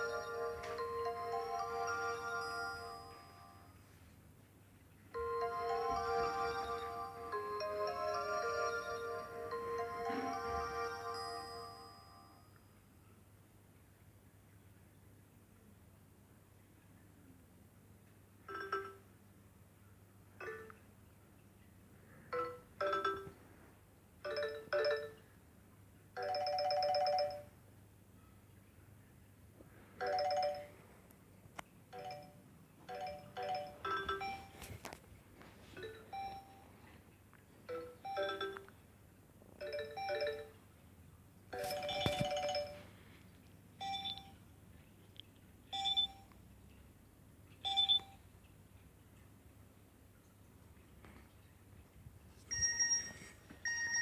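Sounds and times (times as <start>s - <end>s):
mobile phone electronic ringtone: 0.0s - 3.7s, 5.2s - 12.5s, 18.5s - 19.0s, 22.4s - 23.4s, 24.3s - 25.2s, 26.2s - 27.5s, 30.0s - 30.8s, 32.0s - 34.8s, 35.8s - 36.7s, 37.7s - 38.7s, 39.6s - 40.6s, 41.6s - 42.9s, 43.8s - 44.4s, 45.8s - 46.3s, 52.5s - 54.0s.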